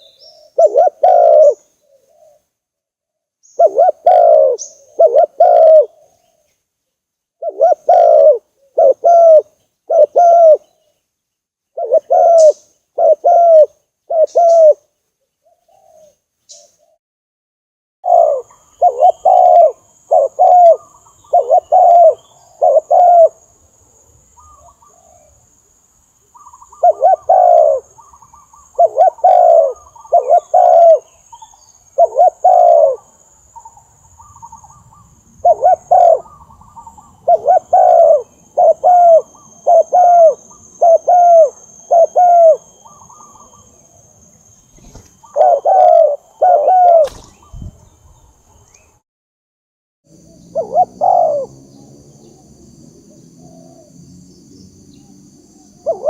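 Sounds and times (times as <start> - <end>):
dove cooing: 0.0 - 2.5, 3.6 - 6.3, 7.4 - 10.8, 11.8 - 14.8, 15.4 - 16.2, 18.0 - 23.4, 24.4 - 25.4, 26.4 - 44.0, 44.7 - 47.9, 50.2 - 52.5, 53.2 - 54.0, 55.5 - 56.0.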